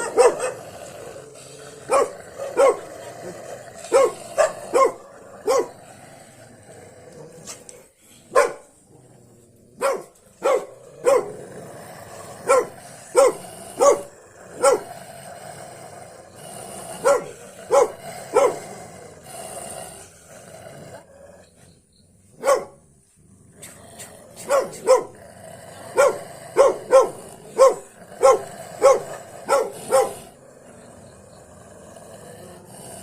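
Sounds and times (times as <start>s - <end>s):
dog barking: 0.0s - 0.6s, 1.9s - 2.8s, 3.9s - 5.7s, 8.3s - 8.7s, 9.8s - 11.4s, 12.4s - 14.9s, 17.0s - 18.6s, 22.4s - 22.8s, 24.4s - 25.2s, 26.0s - 30.3s.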